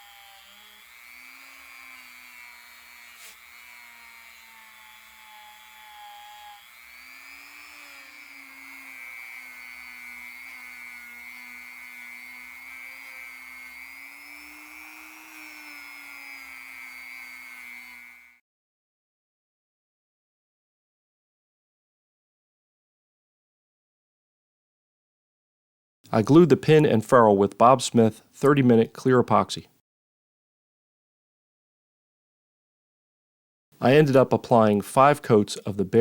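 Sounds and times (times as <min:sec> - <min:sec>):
power tool motor whine: 0:00.0 - 0:18.4.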